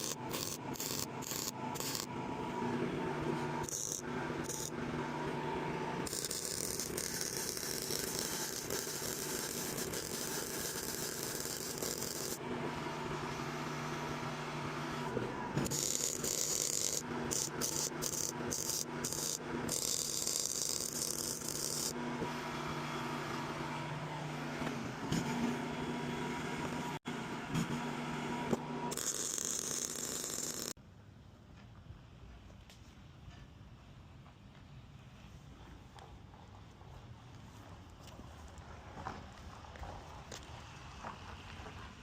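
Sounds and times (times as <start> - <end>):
welding arc hissing and crackling: 0.0 - 2.1, 6.1 - 12.4
machine hum: 0.0 - 30.8.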